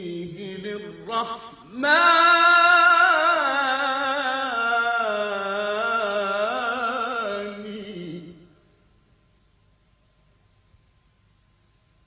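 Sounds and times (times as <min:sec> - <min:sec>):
man singing religious chant: 0:00.0 - 0:08.5.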